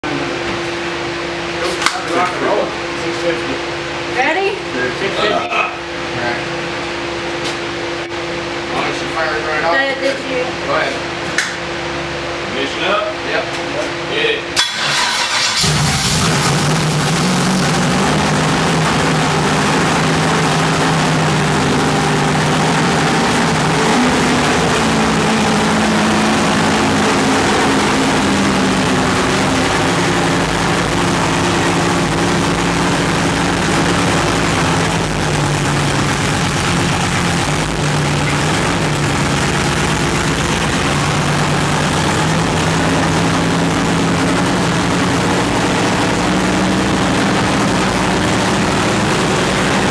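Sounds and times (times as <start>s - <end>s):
racing engine running: 14.6s - 49.9s.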